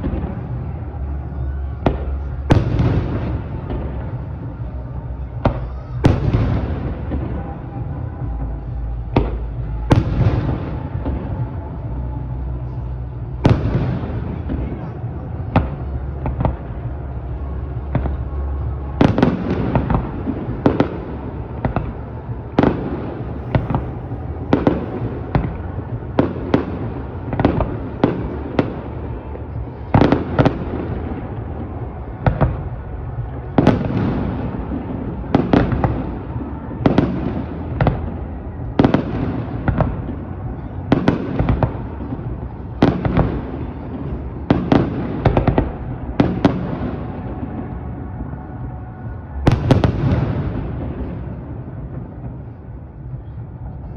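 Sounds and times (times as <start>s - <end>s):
rumbling echo: 0.0s - 53.9s.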